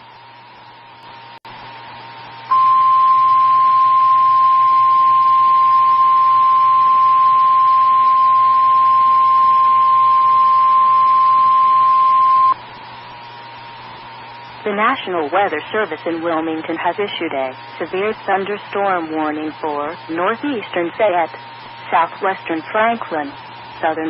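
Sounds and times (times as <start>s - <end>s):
faint radio hiss and hum: 0.0s - 24.0s
loud steady alarm tone: 2.5s - 12.6s.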